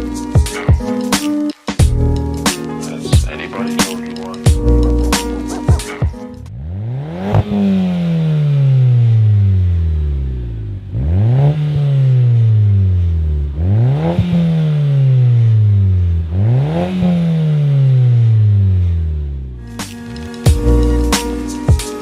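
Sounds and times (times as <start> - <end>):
car exhaust revving: 1.8 - 22.0.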